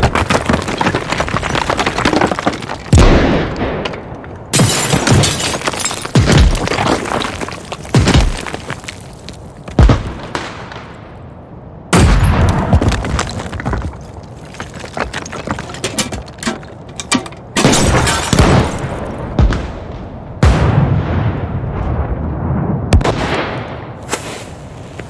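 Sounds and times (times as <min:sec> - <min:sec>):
crackling debris: 0:00.0 - 0:11.0, 0:12.0 - 0:20.1
explosions with rumbling tail: 0:11.9 - 0:13.4, 0:17.8 - 0:24.0.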